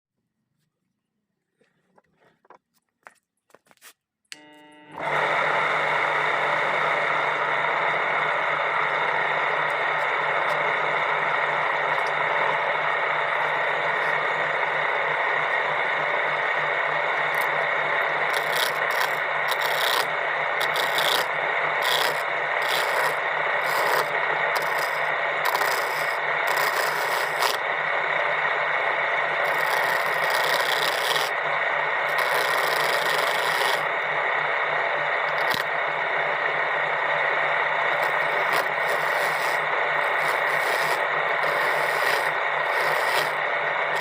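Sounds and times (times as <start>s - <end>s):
power tool motor hum: 4.4s - 44.0s
tool rasping into wood: 18.3s - 27.6s, 29.4s - 31.4s, 32.1s - 33.9s, 38.0s - 43.4s.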